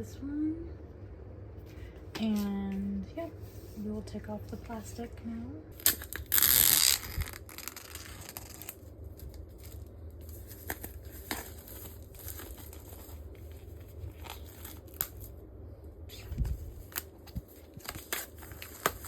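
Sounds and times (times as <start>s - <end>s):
plastic crinkling and ticking: 5.8s - 15.3s, 16.4s - 19.0s
plastic wrap ripping: 5.8s - 15.4s, 16.4s - 19.0s.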